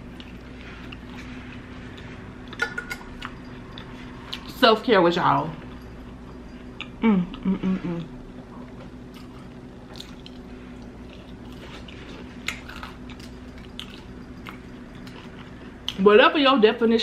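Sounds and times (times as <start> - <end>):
wet chewing mouth sounds: 9.1 - 16.0.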